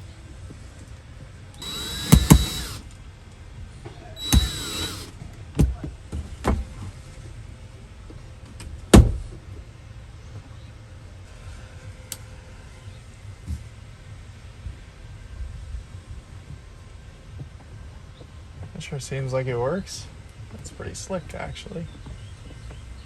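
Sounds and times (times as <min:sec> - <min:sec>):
sharp clicks or knocks: 0:01.6 - 0:02.8, 0:04.2 - 0:05.1
small electric motor whirring: 0:01.6 - 0:02.9, 0:04.2 - 0:05.1.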